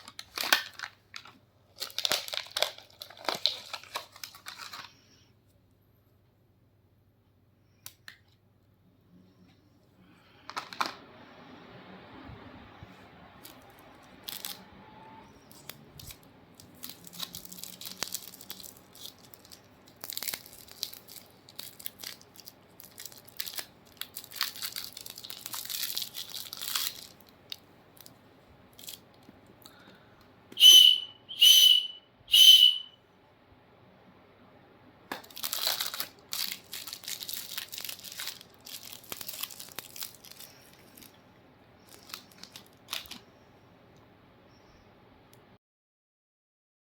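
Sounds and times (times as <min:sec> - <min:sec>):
candy wrappers crinkling: 0:00.0 - 0:05.2, 0:10.3 - 0:11.0, 0:13.4 - 0:14.6, 0:15.5 - 0:29.9, 0:35.1 - 0:43.4
high whistles: 0:30.6 - 0:33.0.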